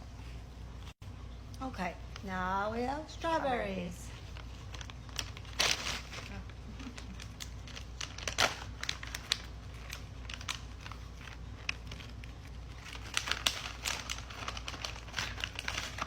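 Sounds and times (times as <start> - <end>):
snack packet crinkling: 4.2 - 16.0.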